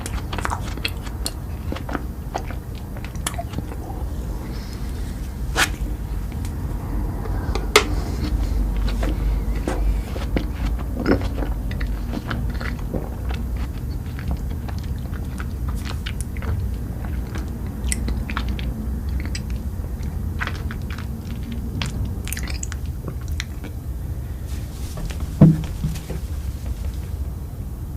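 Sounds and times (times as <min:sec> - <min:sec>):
crunchy chewing and biting: 0:00.0 - 0:27.2
low rumble: 0:02.9 - 0:13.4
dull thump: 0:24.9 - 0:26.4.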